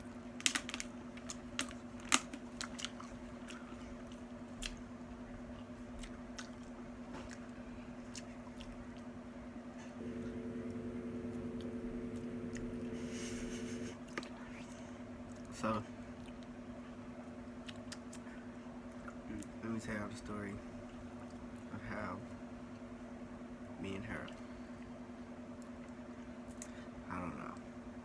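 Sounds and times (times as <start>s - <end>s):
crunchy eating and chewing: 0.0s - 9.2s, 17.4s - 19.6s
low hum: 10.0s - 14.0s.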